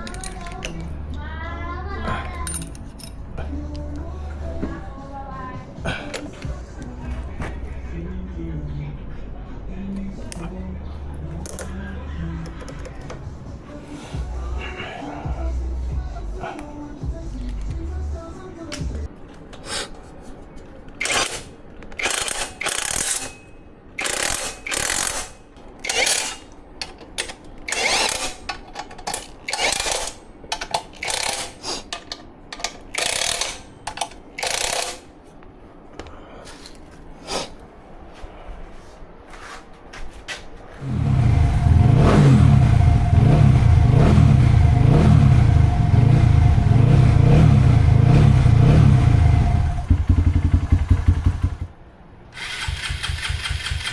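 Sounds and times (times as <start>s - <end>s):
motorcycle engine running: 40.8s - 51.8s.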